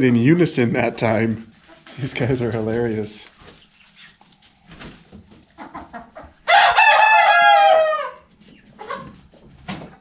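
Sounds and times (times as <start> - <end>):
chickens clucking: 0.2 - 10.0
rooster crowing: 6.5 - 8.2.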